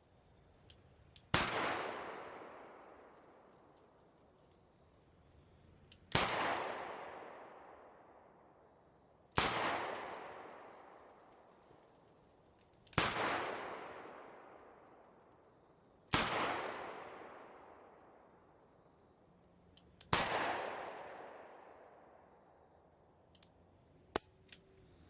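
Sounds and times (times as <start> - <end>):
small gun clicks: 5.8 - 6.2, 19.7 - 20.4, 23.2 - 24.9.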